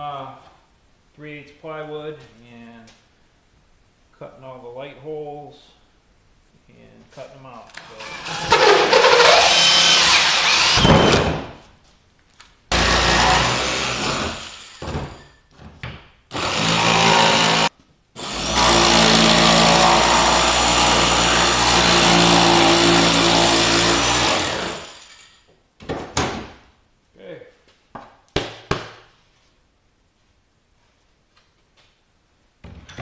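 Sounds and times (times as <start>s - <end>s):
power tool cutting plywood: 7.8s - 11.4s, 12.7s - 15.2s, 16.3s - 25.3s.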